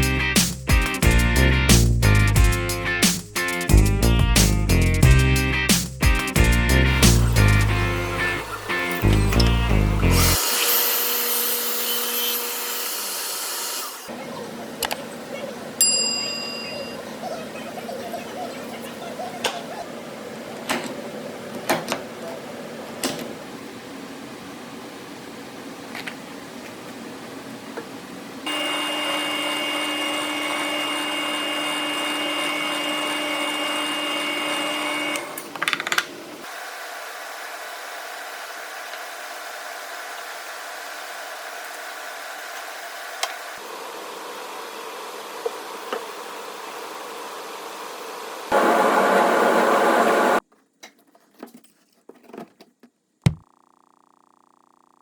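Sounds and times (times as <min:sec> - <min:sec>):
electric sander running: 0:07.2 - 0:11.7, 0:28.5 - 0:35.4.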